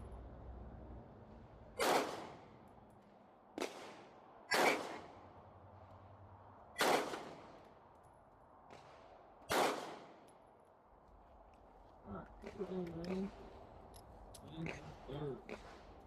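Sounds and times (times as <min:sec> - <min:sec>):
pistol shots: 0:01.8 - 0:02.5, 0:03.6 - 0:05.2, 0:06.8 - 0:07.6, 0:08.9 - 0:10.2.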